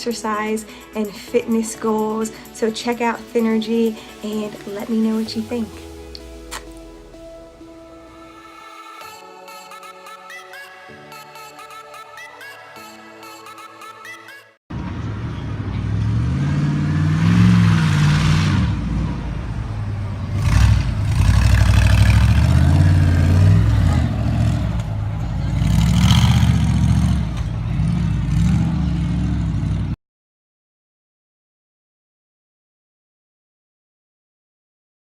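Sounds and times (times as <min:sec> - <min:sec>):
truck engine revving: 0:14.7 - 0:30.0.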